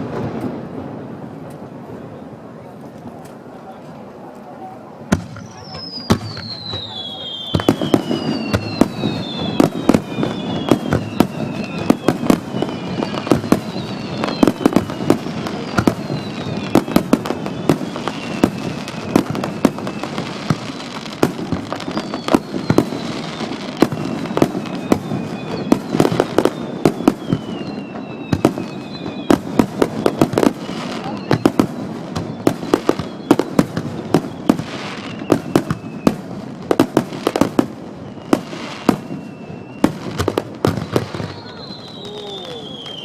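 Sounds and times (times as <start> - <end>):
fireworks bangs and crackles: 0.0 - 43.0
falling whistling tone: 5.3 - 20.2, 21.7 - 36.2, 38.0 - 43.0.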